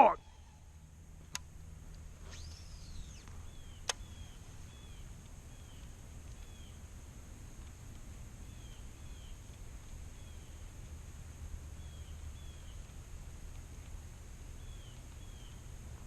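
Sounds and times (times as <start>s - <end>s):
bird chirping: 2.2s - 6.8s, 8.4s - 10.7s, 11.8s - 13.0s, 14.5s - 15.7s.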